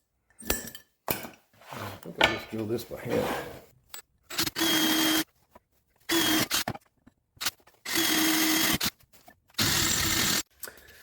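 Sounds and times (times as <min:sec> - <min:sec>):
power drill whining: 0:06.1 - 0:06.7, 0:07.8 - 0:08.9, 0:09.6 - 0:10.4.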